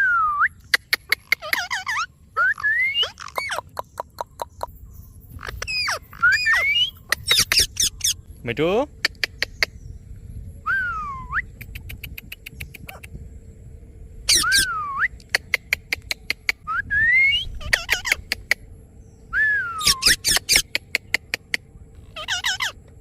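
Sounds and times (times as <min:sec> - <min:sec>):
harsh parrot call: 0:00.8 - 0:04.8, 0:05.4 - 0:08.2, 0:14.3 - 0:18.5, 0:19.4 - 0:22.8
parrot whistling: 0:01.4 - 0:03.6, 0:05.6 - 0:08.2, 0:10.7 - 0:11.6, 0:14.3 - 0:15.2, 0:19.3 - 0:20.7, 0:22.1 - 0:22.8
sharp clicks: 0:15.2 - 0:16.6.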